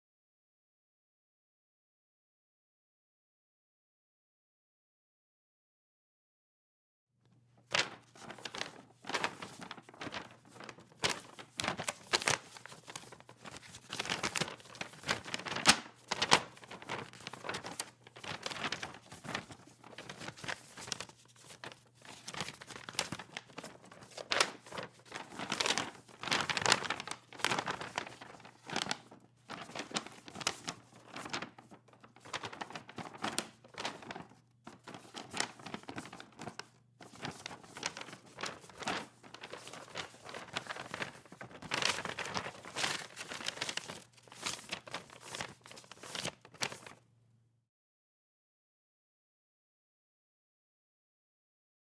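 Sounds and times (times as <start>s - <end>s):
paper crinkling and rustling: 7.3s - 47.0s.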